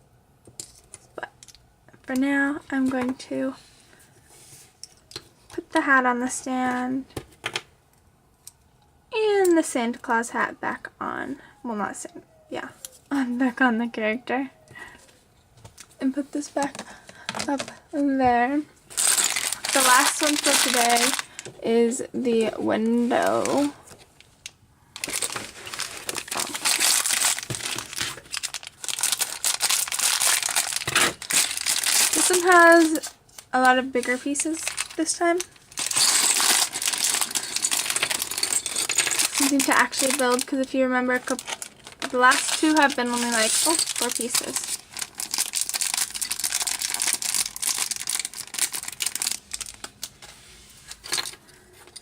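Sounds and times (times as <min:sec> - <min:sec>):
plastic bag crinkling: 0:18.8 - 0:21.6, 0:25.0 - 0:50.3.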